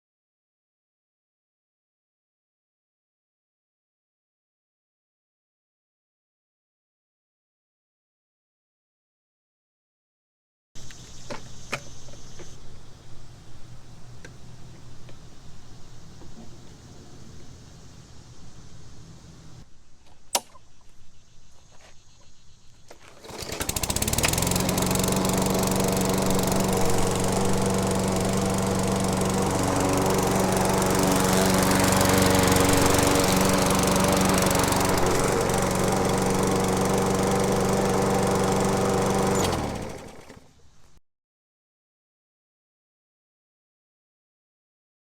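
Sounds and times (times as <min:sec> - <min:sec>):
sharp click: 0:20.3 - 0:20.7
lawn mower engine running: 0:22.9 - 0:40.8
engine spinning down: 0:23.2 - 0:40.5.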